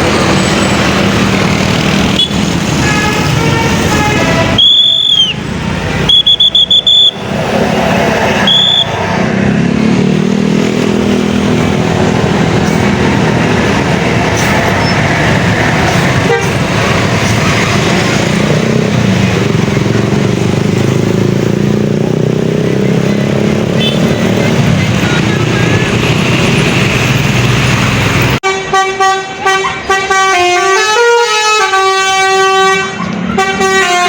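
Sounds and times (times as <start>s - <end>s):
musical bus horn: 2.1s - 7.1s, 16.1s - 17.0s, 23.8s - 24.2s, 28.4s - 34.0s
high-pitched horn blast: 2.1s - 7.2s, 16.1s - 16.7s, 28.4s - 34.0s
diesel engine running: 7.3s - 28.4s.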